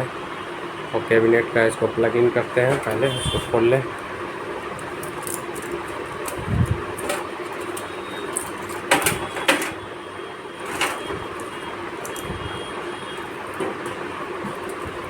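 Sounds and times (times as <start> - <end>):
clicks of cables being handled: 4.8 - 9.8, 10.6 - 12.4.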